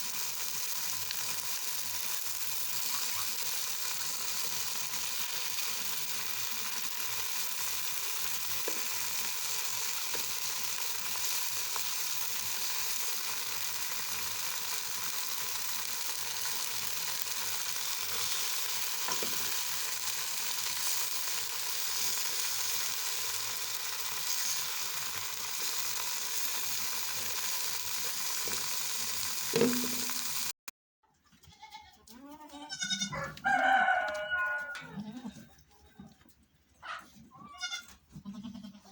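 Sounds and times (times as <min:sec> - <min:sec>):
food sizzling in a frying pan: 0:00.0 - 0:30.6
sharp knock: 0:29.6 - 0:30.2
farm animals bleating: 0:31.3 - 0:35.6, 0:37.3 - 0:38.9.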